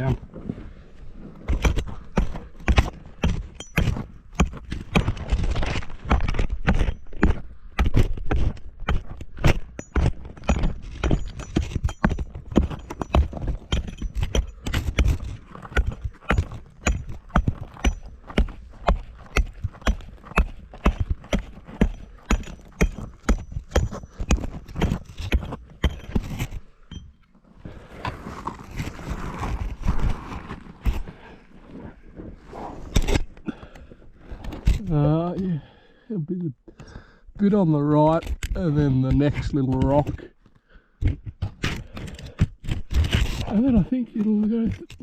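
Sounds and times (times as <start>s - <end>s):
loose rock scraping and rattling: 0.0s - 35.7s, 36.7s - 45.0s
hammer striking rock: 1.5s - 27.2s.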